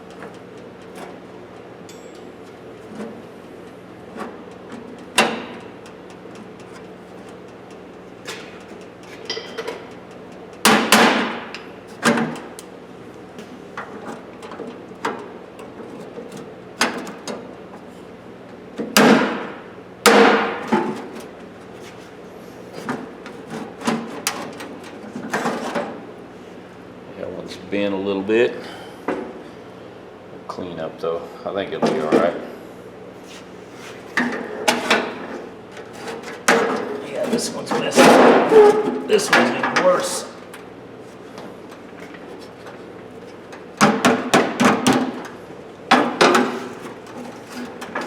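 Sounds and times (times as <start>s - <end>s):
steel drawers knocking and clanking: 34.2s - 40.1s, 43.8s - 48.0s.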